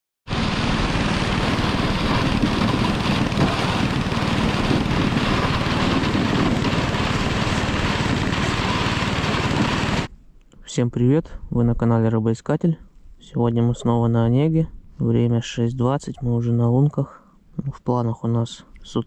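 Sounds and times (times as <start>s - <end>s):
motor engine running: 0.3s - 10.1s.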